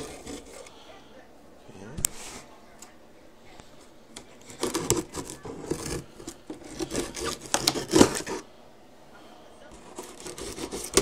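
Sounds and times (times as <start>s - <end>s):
utility knife cutting cardboard: 0.0s - 0.7s, 4.4s - 8.4s, 9.7s - 11.0s.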